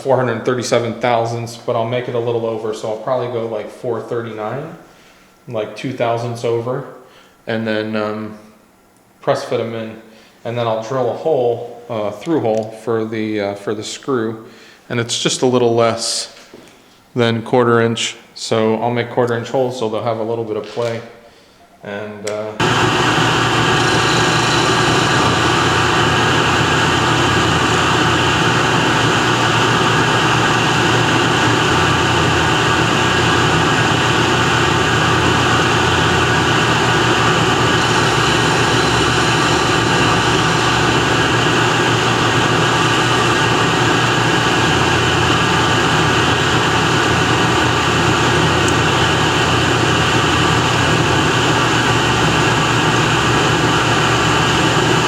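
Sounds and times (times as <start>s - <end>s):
machine tool humming: 22.6s - 55.0s.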